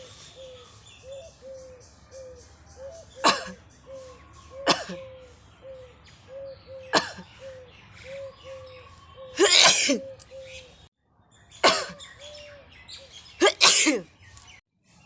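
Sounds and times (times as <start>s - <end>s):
birds chirping: 0.0s - 15.0s
person sneezing: 9.4s - 10.1s, 13.4s - 14.1s.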